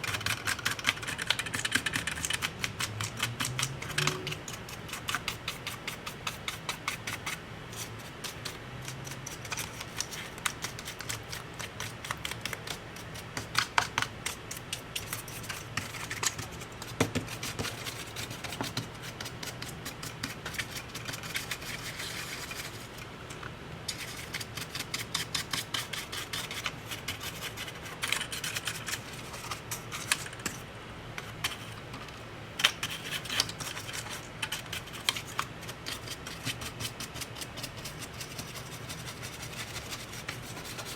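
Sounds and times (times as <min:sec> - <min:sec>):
scratching and rubbing strokes: 0:36.0 - 0:40.9.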